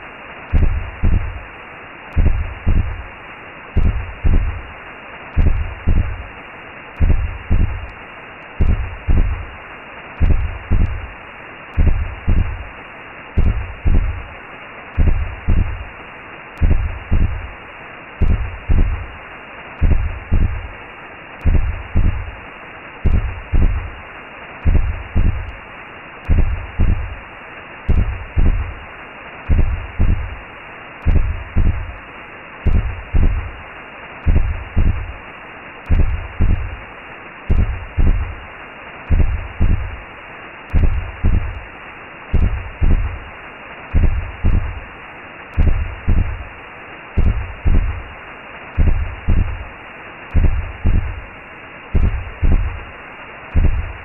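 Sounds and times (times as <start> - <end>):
whooshing hiss: 0.0 - 54.0
heartbeat thumps: 0.5 - 1.4, 2.1 - 3.1, 3.7 - 4.7, 5.4 - 6.3, 7.0 - 9.6, 10.2 - 11.2, 11.8 - 12.7, 13.4 - 14.3, 15.0 - 15.9, 16.6 - 17.6, 18.2 - 19.2, 19.8 - 20.8, 21.4 - 22.4, 23.0 - 24.0, 24.6 - 25.6, 26.2 - 27.2, 27.9 - 28.8, 29.5 - 30.4, 31.0 - 32.0, 32.6 - 33.6, 34.2 - 35.2, 35.9 - 36.8, 37.5 - 38.4, 39.1 - 40.0, 40.7 - 41.7, 42.3 - 43.3, 43.9 - 44.9, 45.5 - 46.5, 47.2 - 48.1, 48.8 - 49.7, 50.3 - 51.3, 51.9 - 52.9, 53.5 - 54.0.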